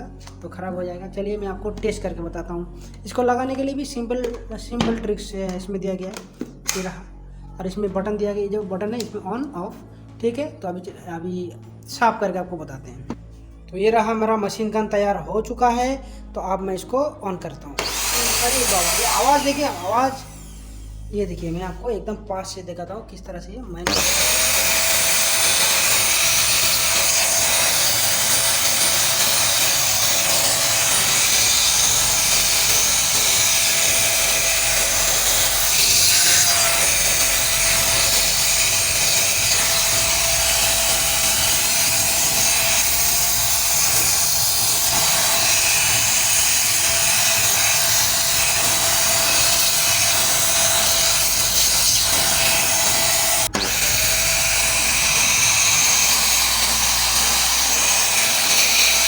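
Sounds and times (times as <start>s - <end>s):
handheld vacuum cleaner running: 17.8s - 21.0s, 23.9s - 59.0s.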